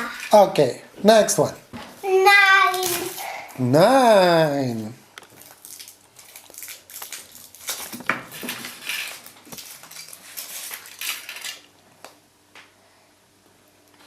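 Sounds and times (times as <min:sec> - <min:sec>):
foil crinkling: 0:04.7 - 0:11.8.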